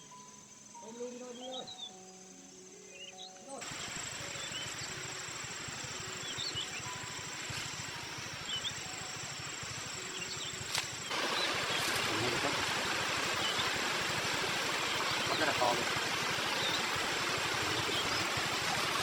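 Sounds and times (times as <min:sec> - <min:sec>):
bird chirps: 0:00.0 - 0:12.6, 0:13.3 - 0:14.1, 0:14.8 - 0:18.7
high insect drone: 0:00.0 - 0:19.0
steady hiss: 0:00.0 - 0:19.0.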